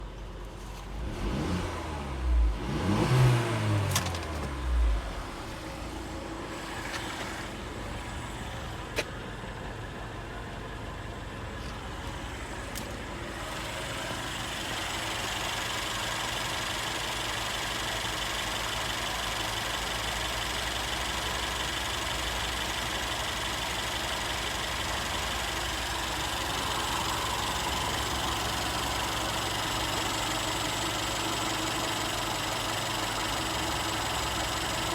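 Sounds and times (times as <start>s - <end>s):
engine revving: 1.0s - 8.7s.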